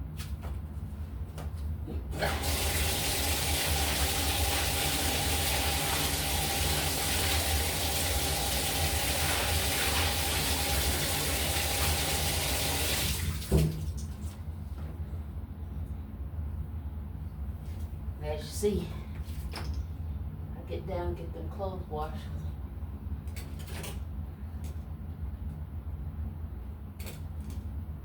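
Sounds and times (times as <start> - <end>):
tap running into tub: 2.1 - 14.2.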